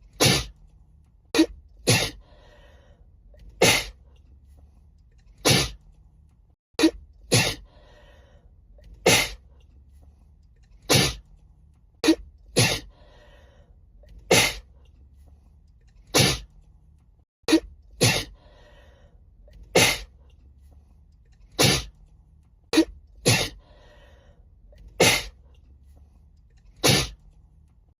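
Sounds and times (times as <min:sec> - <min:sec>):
woman sneezing: 0:01.4 - 0:02.2, 0:05.5 - 0:05.8, 0:06.8 - 0:07.6, 0:12.1 - 0:12.9, 0:14.3 - 0:14.6, 0:17.5 - 0:18.4, 0:19.8 - 0:20.1, 0:22.8 - 0:23.6, 0:25.0 - 0:25.4, 0:26.8 - 0:27.2.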